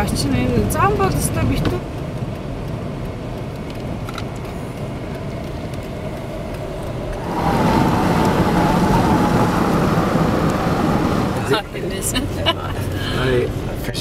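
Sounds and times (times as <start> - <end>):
engine and road rumble: 0.0 - 14.0.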